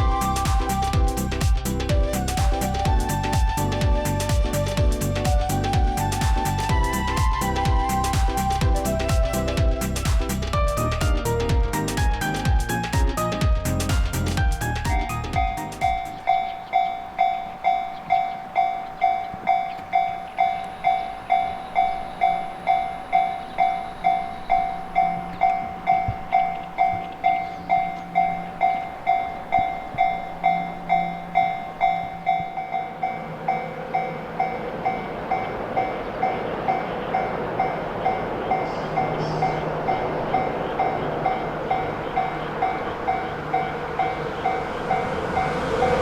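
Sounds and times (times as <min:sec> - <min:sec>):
level-crossing warning bell: 0:00.0 - 0:01.6, 0:14.1 - 0:46.0
approaching train running noise: 0:00.0 - 0:46.0.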